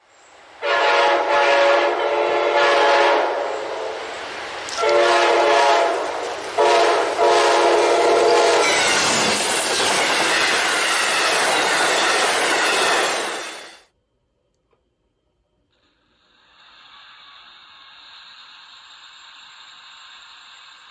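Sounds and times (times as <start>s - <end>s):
passing train rumble: 0.0s - 13.8s
locomotive air horn blasts: 0.6s - 8.9s.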